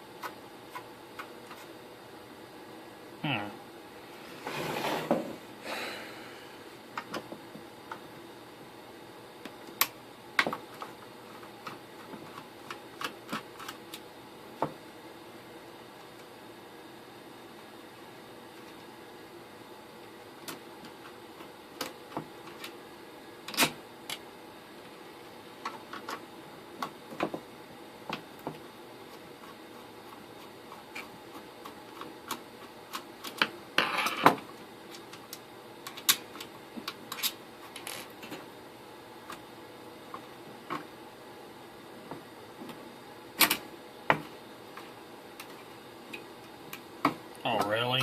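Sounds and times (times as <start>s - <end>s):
rattling scrape: 4.4s - 5.3s.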